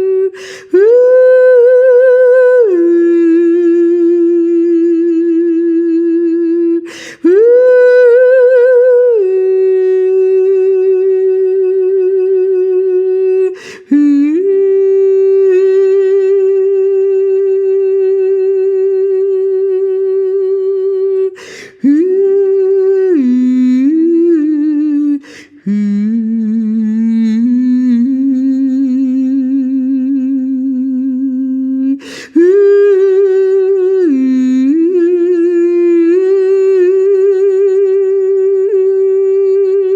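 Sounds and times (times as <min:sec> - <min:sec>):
woman singing wordless held notes: 0:00.0 - 0:39.9
woman breathing in: 0:00.4 - 0:00.7, 0:06.9 - 0:07.2, 0:13.6 - 0:13.9, 0:21.4 - 0:21.8, 0:25.2 - 0:25.6, 0:32.0 - 0:32.4.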